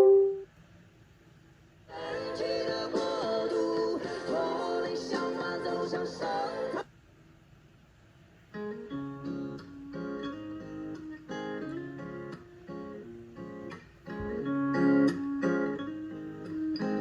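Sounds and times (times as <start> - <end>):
acoustic guitar chords: 0.0 - 0.4, 8.6 - 17.0.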